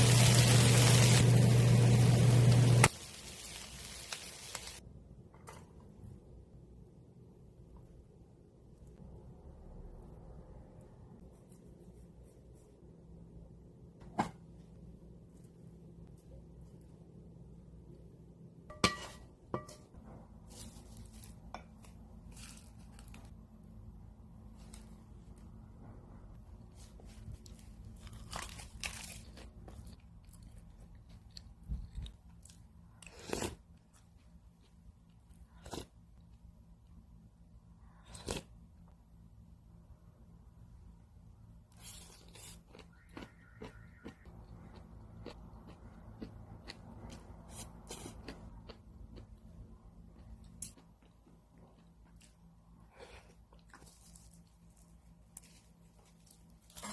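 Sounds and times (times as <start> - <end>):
dishes clinking: 18.7 - 20.0
rustling tearing noise: 27.3 - 29.8.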